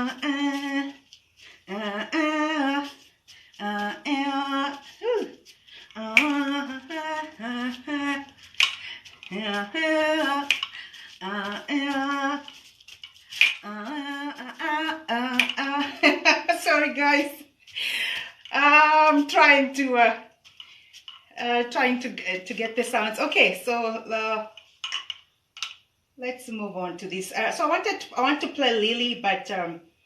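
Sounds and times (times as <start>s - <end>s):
woman singing wordless tune: 0.0s - 12.6s, 13.4s - 17.5s, 18.3s - 20.2s, 21.4s - 24.6s.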